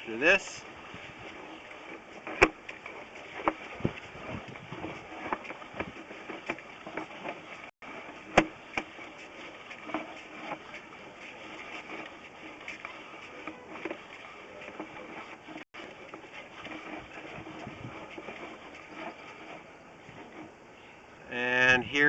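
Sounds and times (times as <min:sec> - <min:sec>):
cable clicking and knocking in pipe: 0:02.2 - 0:07.4.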